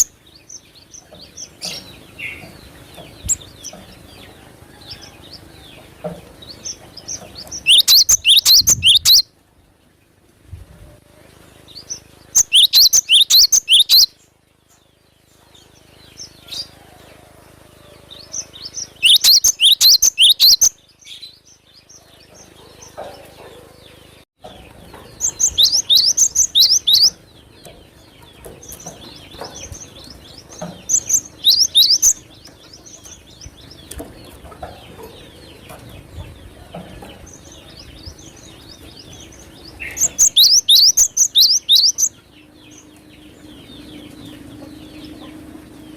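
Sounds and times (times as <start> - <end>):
bird singing high sweeping notes: 7.6 - 9.3, 11.7 - 14.3, 18.2 - 22.2, 25.2 - 27.6, 29.7 - 32.6, 37.9 - 45.9.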